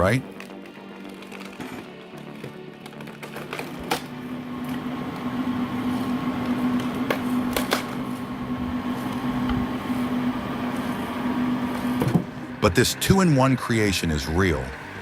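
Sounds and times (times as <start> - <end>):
motor hum: 3.7 - 15.0.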